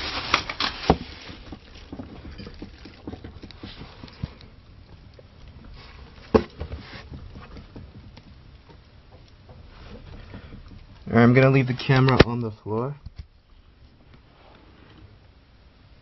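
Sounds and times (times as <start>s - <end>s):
building creaking and rattling: 0.0s - 12.6s.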